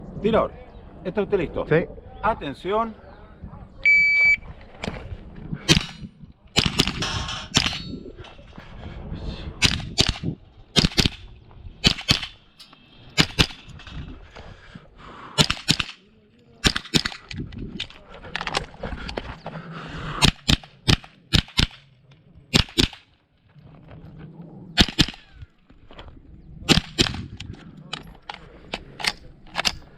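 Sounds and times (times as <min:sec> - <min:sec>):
rifle firing: 0:06.6 - 0:07.0, 0:09.6 - 0:12.4, 0:13.2 - 0:13.6, 0:15.4 - 0:16.0, 0:16.6 - 0:17.3, 0:20.2 - 0:21.9, 0:22.5 - 0:23.1, 0:24.8 - 0:25.4, 0:26.7 - 0:27.3.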